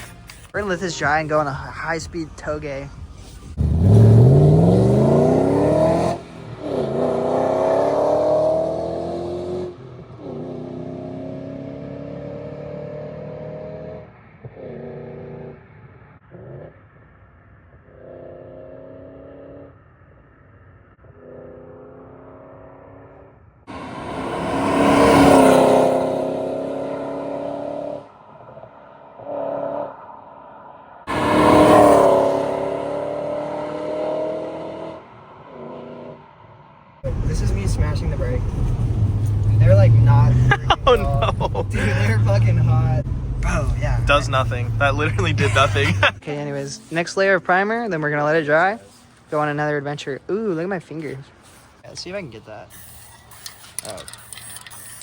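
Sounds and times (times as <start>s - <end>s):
car engine accelerating and revving: 3.1s - 20.4s, 21.0s - 46.2s.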